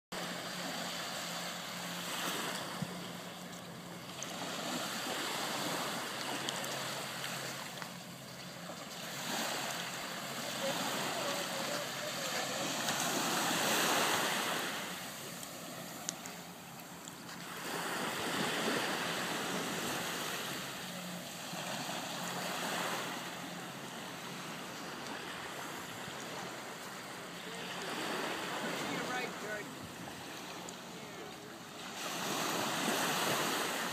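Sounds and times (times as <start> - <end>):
ocean surf washing onto beach: 0.2 - 33.9.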